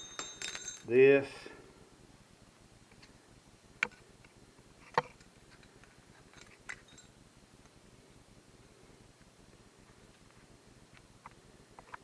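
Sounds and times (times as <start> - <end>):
metal parts clinking: 0.0 - 1.0.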